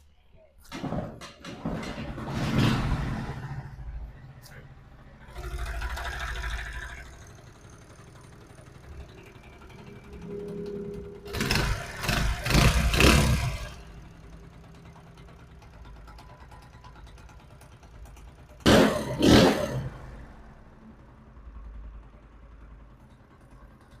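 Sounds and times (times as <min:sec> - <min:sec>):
motorcycle engine revving: 0:02.1 - 0:20.6
motorcycle engine idling: 0:03.6 - 0:24.0.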